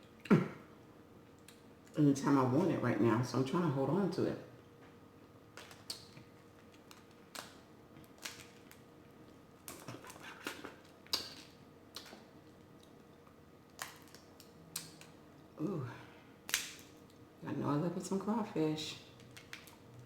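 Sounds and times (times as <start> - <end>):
shellfish shells cracking: 5.5 - 15.2, 16.4 - 17.2, 19.2 - 19.8.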